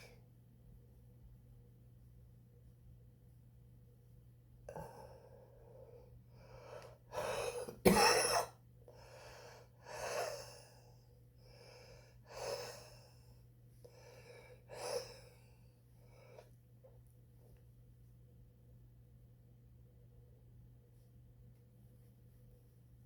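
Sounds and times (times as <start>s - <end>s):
person breathing hard: 4.7s - 7.8s, 8.9s - 16.5s
sharp cough: 7.7s - 8.6s.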